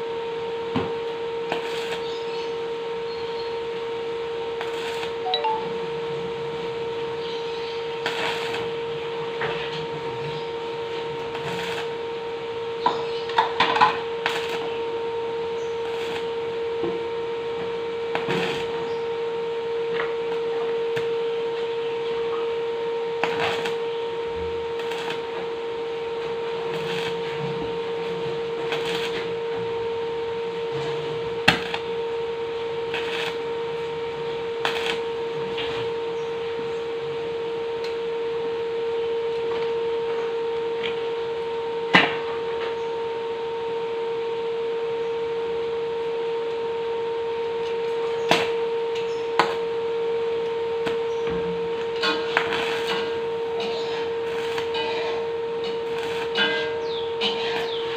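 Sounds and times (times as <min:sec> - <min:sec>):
arc welding hiss: 0:00.0 - 0:05.3, 0:06.5 - 0:22.3, 0:23.2 - 0:35.9, 0:47.6 - 0:57.9
welding machine hum: 0:00.0 - 0:57.9.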